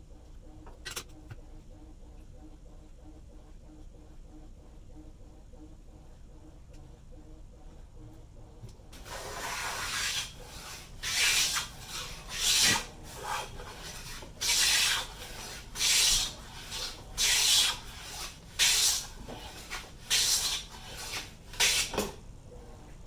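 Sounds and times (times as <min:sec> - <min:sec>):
hand plane shaving a board: 0:09.0 - 0:21.9.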